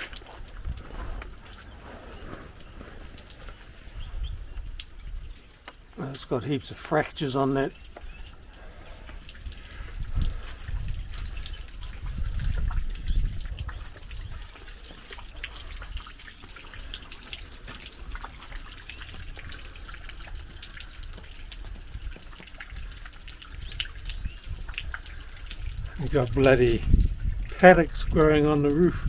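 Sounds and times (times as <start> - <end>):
steady rain hiss: 0.0 - 14.0, 23.5 - 29.0
raindrops pattering and dripping: 0.0 - 29.0.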